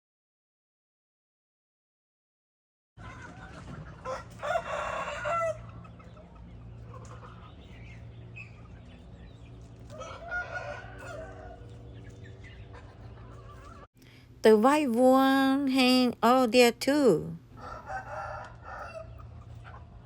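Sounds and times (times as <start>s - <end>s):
rooster and hens calling: 3.0s - 13.9s, 17.5s - 20.0s
steady low hum: 5.6s - 17.9s.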